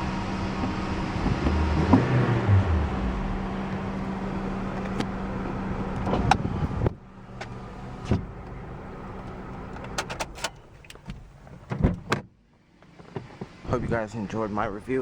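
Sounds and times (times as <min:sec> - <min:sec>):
car engine idling: 0:00.0 - 0:11.6.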